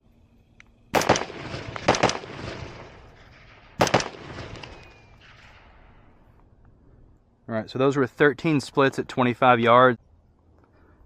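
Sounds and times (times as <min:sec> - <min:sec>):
rifle shots with rolling echo: 0:00.8 - 0:06.6.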